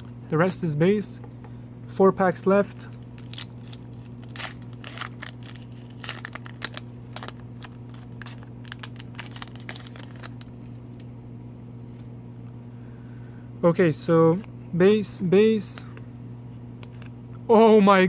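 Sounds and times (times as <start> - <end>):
steady low hum: 0.0 - 18.0
foil wrapper tearing and crinkling: 2.9 - 11.0.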